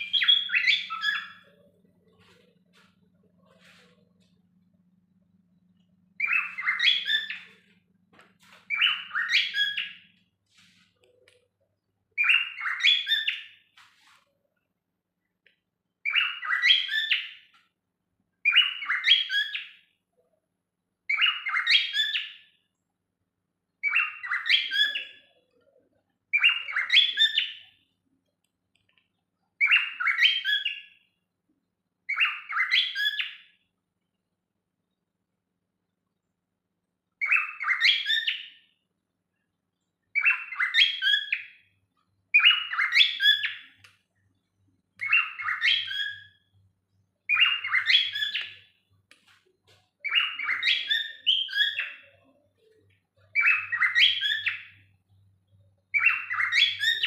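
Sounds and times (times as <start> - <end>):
cockatiel chirping: 0.0 - 1.7, 6.2 - 7.6, 8.7 - 10.1, 12.2 - 13.6, 16.0 - 17.6, 18.4 - 19.8, 21.1 - 22.5, 23.8 - 25.3, 26.3 - 27.8, 29.6 - 31.0, 32.1 - 33.5, 37.2 - 38.6, 40.1 - 41.6, 42.3 - 43.9, 45.0 - 46.5, 47.3 - 48.7, 50.0 - 52.2, 53.3 - 54.9, 55.9 - 57.0.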